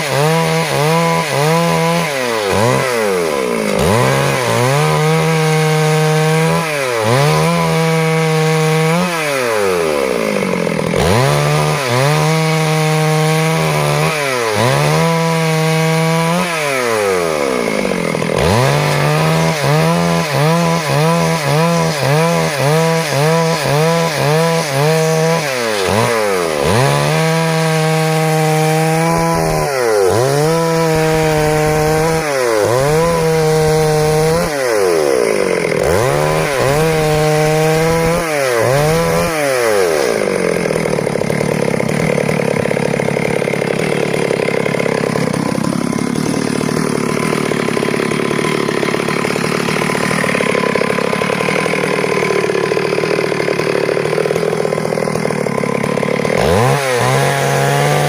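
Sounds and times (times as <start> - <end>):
chainsaw cutting wood: 0.0 - 58.0.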